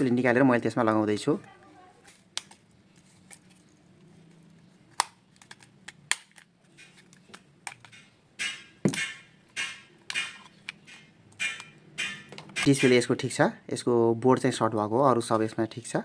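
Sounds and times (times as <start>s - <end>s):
plastic phone parts clicking: 2.0s - 3.7s, 4.3s - 13.0s.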